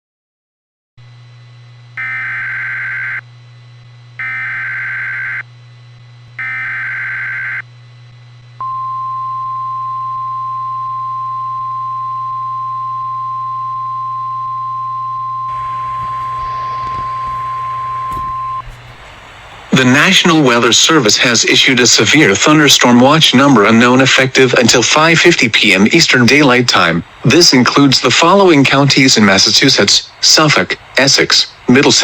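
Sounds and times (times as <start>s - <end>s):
steady warning alarm tone: 2.0s - 3.2s, 4.2s - 5.5s, 6.4s - 7.7s, 15.5s - 20.2s.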